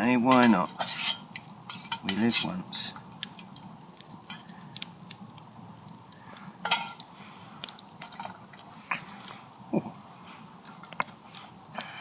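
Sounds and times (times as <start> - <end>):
metal utensils scraping a pan: 0.2 - 2.6, 6.6 - 7.0, 8.0 - 8.4.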